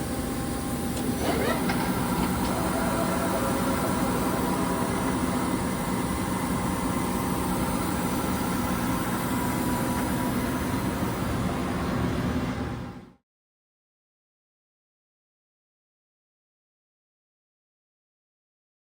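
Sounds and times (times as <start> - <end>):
lathe machine hum: 0.1 - 12.9
held machine tones: 1.1 - 7.5.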